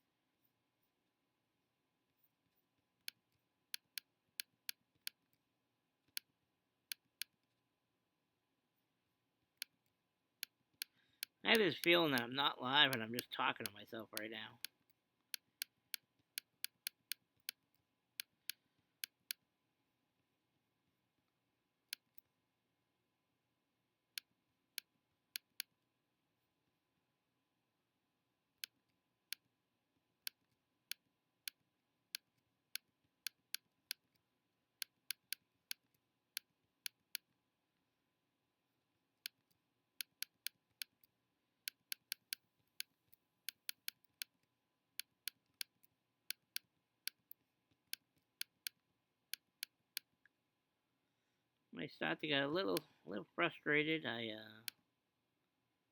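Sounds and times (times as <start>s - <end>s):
computer mouse clicking: 34.8s - 37.3s, 41.7s - 44.4s.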